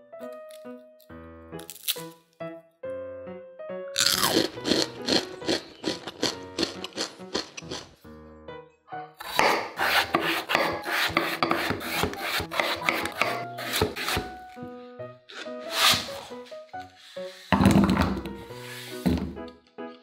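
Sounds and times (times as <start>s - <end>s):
light background music: 0.0s - 20.0s
scraping potatoes: 9.2s - 14.4s.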